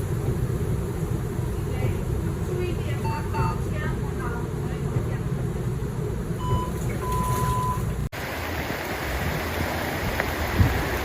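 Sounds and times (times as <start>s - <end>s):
traffic: 0.0s - 11.0s
high beep: 6.4s - 7.8s
floodwater rushing: 6.9s - 11.0s.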